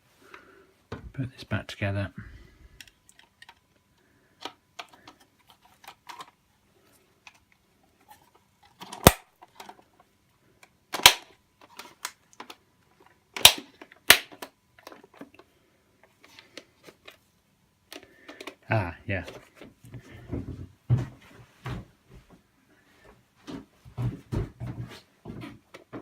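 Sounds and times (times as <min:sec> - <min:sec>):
plastic parts clicking and rattling: 0:02.8 - 0:03.8, 0:04.4 - 0:06.4, 0:07.2 - 0:17.3, 0:17.9 - 0:18.6
plastic clips snapping: 0:10.9 - 0:12.6, 0:13.4 - 0:14.9.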